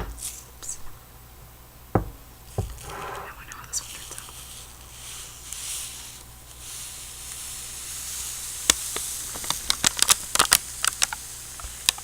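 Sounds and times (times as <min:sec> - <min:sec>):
soft hissy rustle: 0:00.0 - 0:12.0.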